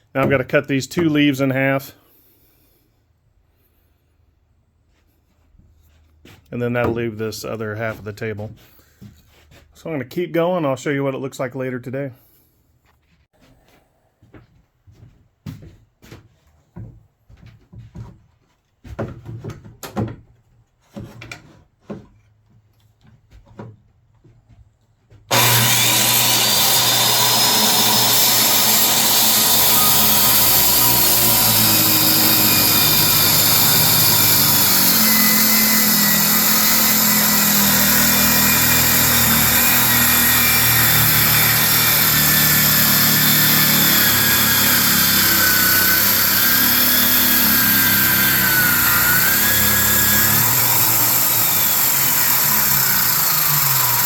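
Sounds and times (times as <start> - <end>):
circular saw cutting wood: 25.3 - 54.0.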